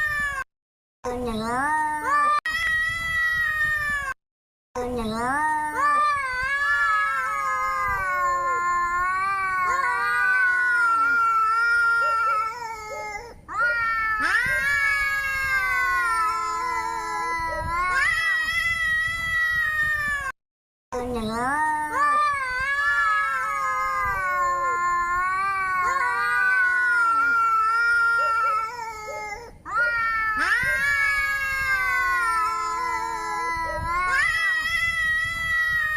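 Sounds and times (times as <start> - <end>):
angry cat yowling: 6.4 - 20.3, 22.6 - 35.9.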